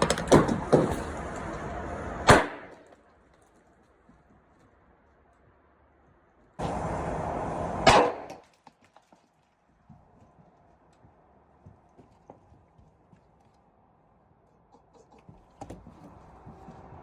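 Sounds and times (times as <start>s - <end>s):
grenade bang: 2.2s - 2.8s, 7.7s - 8.4s.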